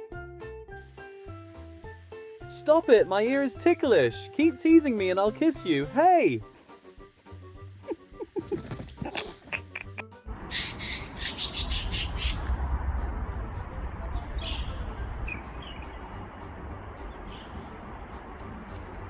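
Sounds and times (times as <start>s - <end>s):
steady rumbling noise: 12.0s - 19.0s.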